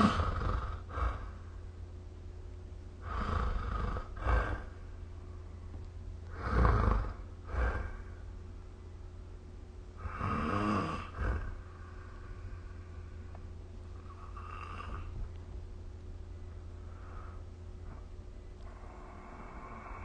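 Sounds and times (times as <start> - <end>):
person snoring: 0.0 - 1.4, 3.0 - 4.8, 6.3 - 8.2, 10.0 - 11.7, 14.0 - 15.1, 18.6 - 20.0
steady low hum: 0.0 - 20.0.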